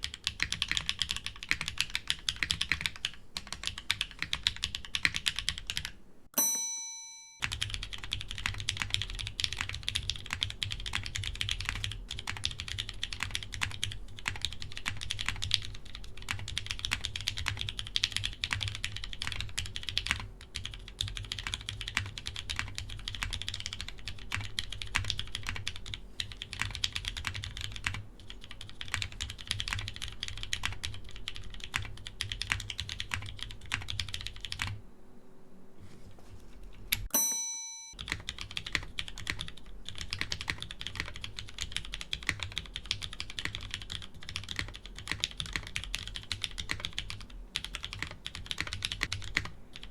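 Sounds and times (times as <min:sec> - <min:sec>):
mechanical keyboard typing: 0:00.0 - 0:05.9, 0:07.4 - 0:34.8, 0:37.9 - 0:49.9
bell-like ding: 0:06.4 - 0:07.5, 0:37.1 - 0:38.0.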